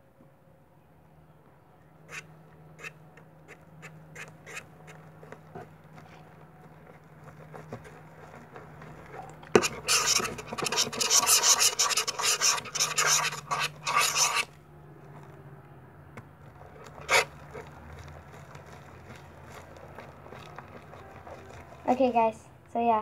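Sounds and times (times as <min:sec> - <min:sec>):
slime scraping and rubbing: 0:05.5 - 0:14.5, 0:16.4 - 0:22.1.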